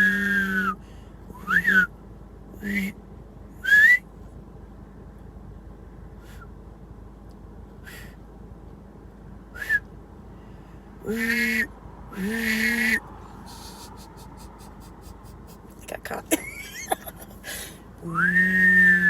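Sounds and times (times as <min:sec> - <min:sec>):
person making hoot-like calls: 0:11.1 - 0:15.6
person making high chirps: 0:11.1 - 0:15.7.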